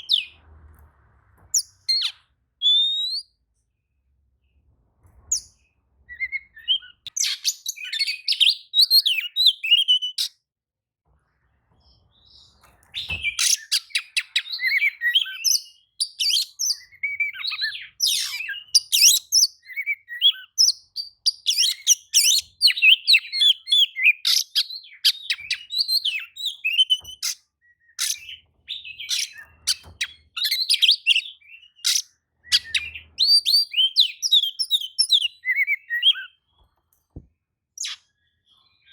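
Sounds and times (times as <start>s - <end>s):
bird singing whistles and trills: 1.5s - 3.4s, 6.1s - 10.4s, 12.3s - 36.5s.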